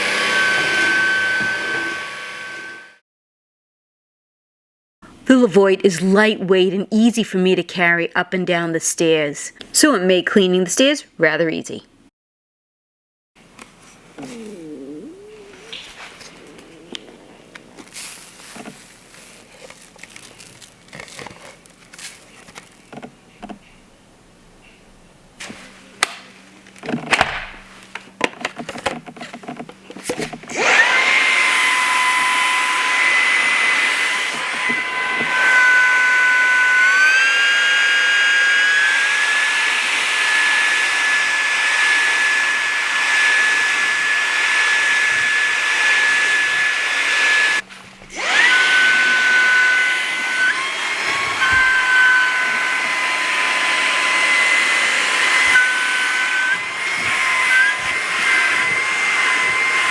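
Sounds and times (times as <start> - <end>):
vacuum motor whining: 0.0 - 3.0, 14.1 - 18.8, 29.8 - 59.9
handling clicks and knocks: 26.0 - 30.5.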